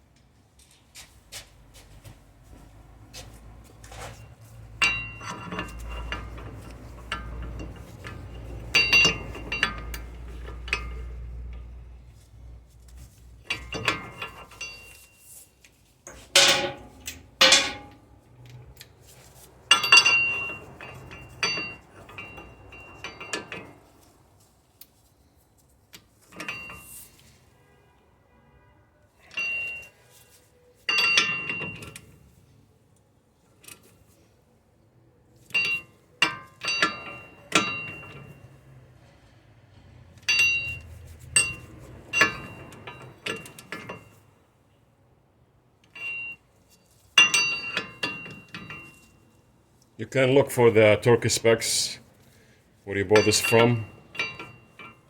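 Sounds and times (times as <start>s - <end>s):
metal tools clinking: 3.8s - 11.8s, 13.4s - 15.4s, 16.1s - 18.6s, 19.6s - 23.9s, 30.9s - 32.1s, 35.5s - 38.5s, 45.8s - 49.3s, 50.2s - 55.0s
ringing metallic knocks: 16.3s - 18.0s.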